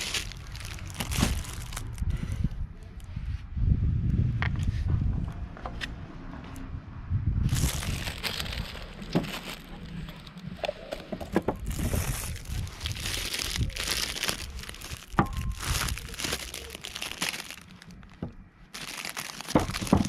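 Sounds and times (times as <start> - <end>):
crinkling and rustling: 0.0 - 2.0, 7.5 - 20.0.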